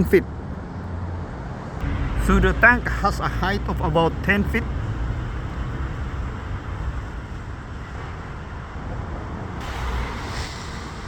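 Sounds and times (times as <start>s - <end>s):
low outdoor rumble: 1.8s - 11.0s
rushing hiss: 9.6s - 11.0s.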